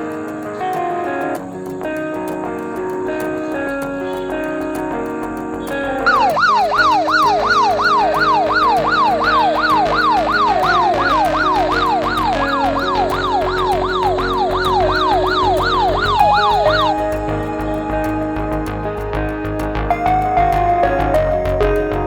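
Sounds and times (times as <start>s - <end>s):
background music: 0.0s - 22.0s
electronic whooping siren alarm: 6.1s - 18.4s.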